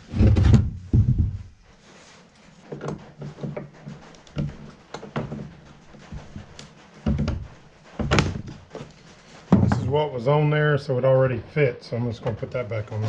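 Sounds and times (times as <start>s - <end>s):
hard parts knocking and clunking: 2.7s - 10.0s.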